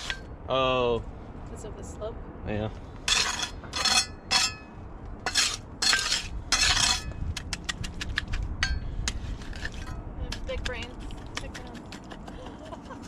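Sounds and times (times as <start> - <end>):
trowel scraping wet concrete: 3.1 - 4.6, 5.3 - 8.2, 9.1 - 10.4.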